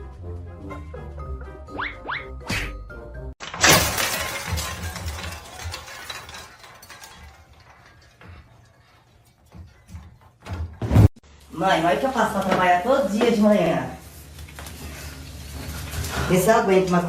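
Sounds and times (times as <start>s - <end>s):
loud shattering crash: 3.4s - 9.8s
breaking and clinking: 3.4s - 10.8s.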